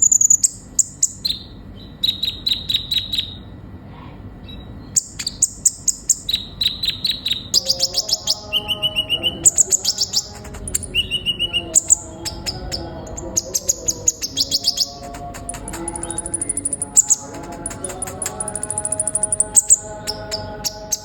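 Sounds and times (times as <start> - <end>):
sunbird chirping song: 0.0 - 3.5, 4.4 - 21.0
buzzy bird trills: 5.0 - 21.0.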